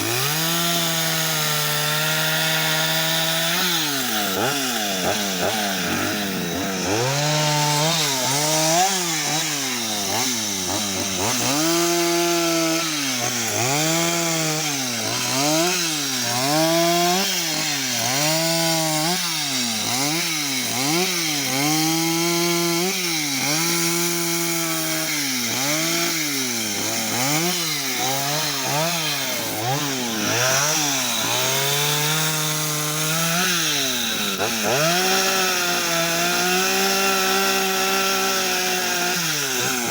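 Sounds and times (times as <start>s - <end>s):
chainsaw revving cutting wood: 0.0s - 39.9s.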